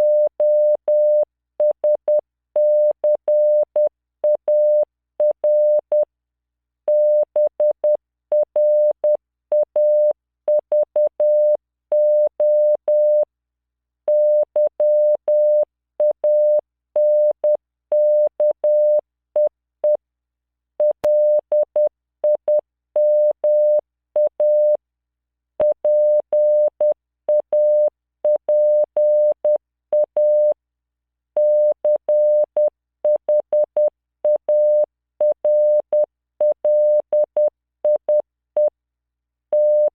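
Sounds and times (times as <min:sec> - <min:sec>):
morse code beeps: 0:35.4 - 0:38.2, 0:39.6 - 0:39.9.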